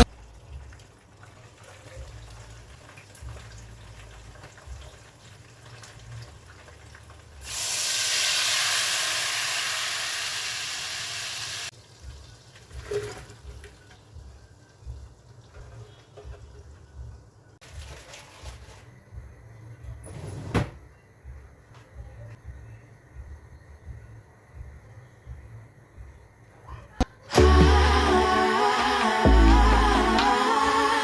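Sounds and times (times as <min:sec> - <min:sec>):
running water hiss: 0:07.4 - 0:12.1.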